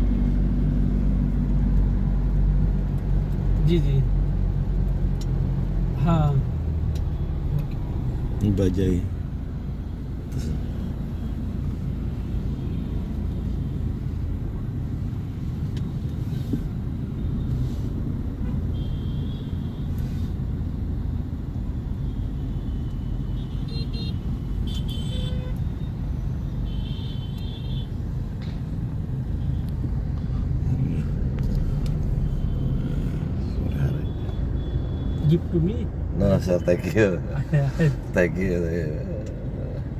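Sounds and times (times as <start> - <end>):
traffic engines and tyres rumbling: 0.0 - 39.9
car horn beeps: 18.4 - 20.0, 22.6 - 26.0, 26.6 - 28.0, 33.8 - 35.4.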